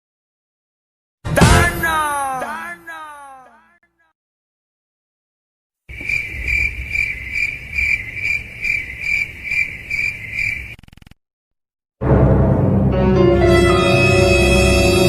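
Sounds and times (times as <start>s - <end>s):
cricket chirping: 5.9s - 11.1s.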